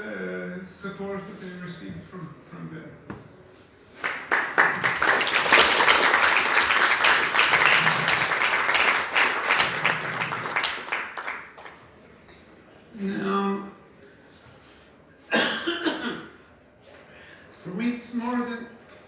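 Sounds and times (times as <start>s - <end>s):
audience applauding: 4.0s - 11.8s.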